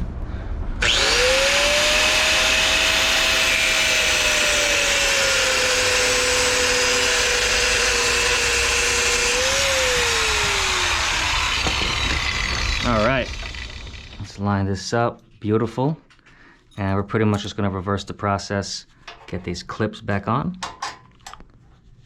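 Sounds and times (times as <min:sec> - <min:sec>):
power tool cutting metal shaft: 0:00.8 - 0:14.4.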